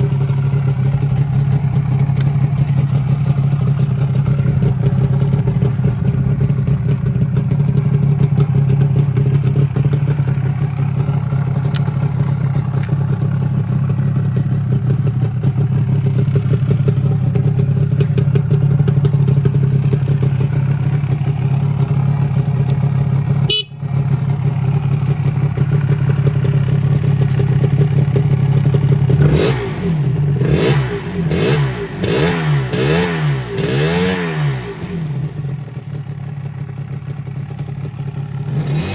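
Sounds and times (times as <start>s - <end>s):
two-stroke engine idling and revving: 0.0s - 38.9s.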